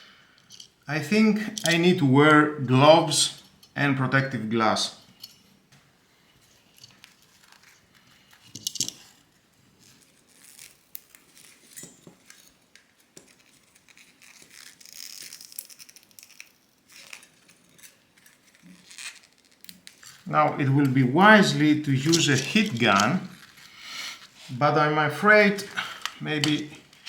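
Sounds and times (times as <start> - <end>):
rustling and crinkling: 5.7 - 24.6.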